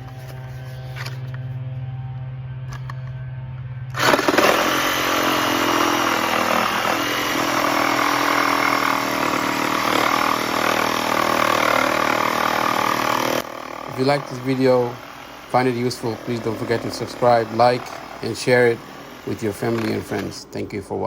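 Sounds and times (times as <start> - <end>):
reciprocating saw running: 3.9 - 20.6.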